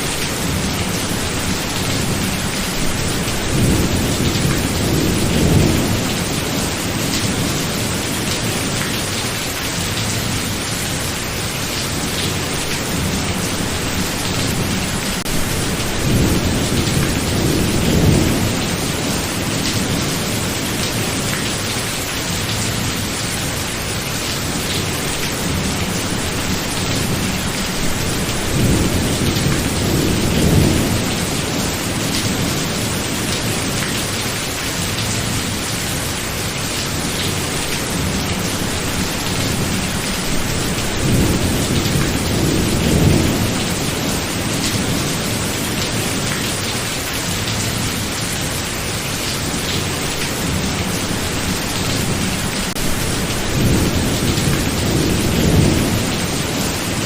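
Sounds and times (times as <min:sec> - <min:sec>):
heavy rain: 0:00.0 - 0:57.0
thunder rumbling: 0:12.9 - 0:21.2, 0:25.4 - 0:33.6, 0:37.9 - 0:46.3, 0:50.4 - 0:57.0.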